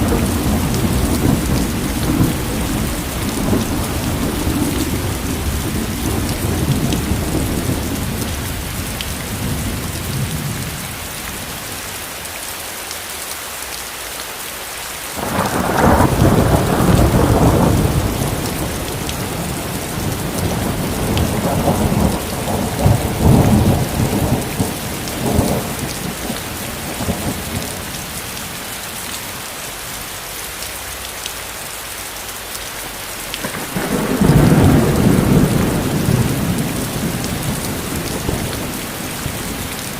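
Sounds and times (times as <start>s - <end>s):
thunder rolling: 0.0s - 8.7s, 15.2s - 27.9s, 33.4s - 39.9s
rain hissing: 0.0s - 39.9s.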